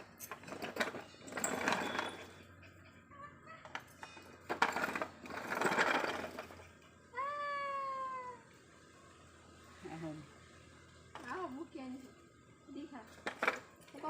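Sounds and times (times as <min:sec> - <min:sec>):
puppy whining: 0:01.0 - 0:04.5.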